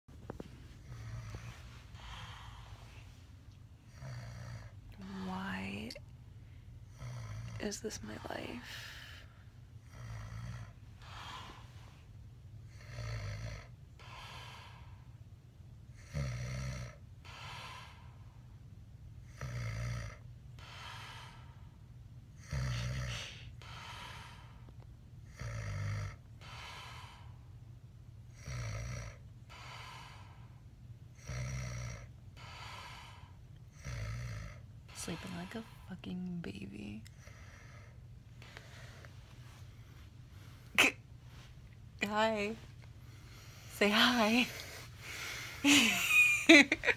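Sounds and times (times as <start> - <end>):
soft breath: 0.2 - 5.6, 8.2 - 12.2, 14.0 - 15.2, 17.2 - 18.6, 20.6 - 21.9, 22.6 - 24.8, 26.4 - 27.6, 29.5 - 30.7, 32.0 - 36.0, 37.1 - 41.8, 42.6 - 45.9
man snoring heavily: 0.8 - 2.6, 3.9 - 5.4, 6.9 - 7.7, 9.8 - 11.6, 12.7 - 14.6, 16.0 - 18.0, 19.3 - 21.4, 22.4 - 24.6, 25.3 - 27.3, 28.3 - 30.4, 31.2 - 35.6.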